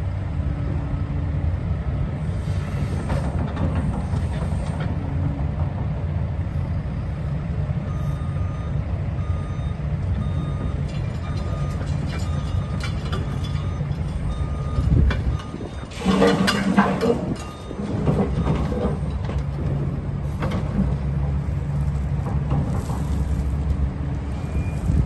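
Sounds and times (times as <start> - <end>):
excavator diesel engine running: 0.0 - 25.0
travel alarm beeping: 7.9 - 16.0, 17.3 - 19.1.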